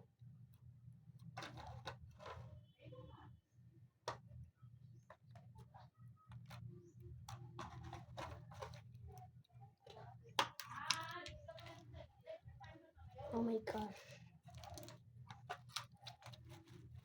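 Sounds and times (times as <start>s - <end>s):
slime clicking and crackling: 13.6s - 17.0s.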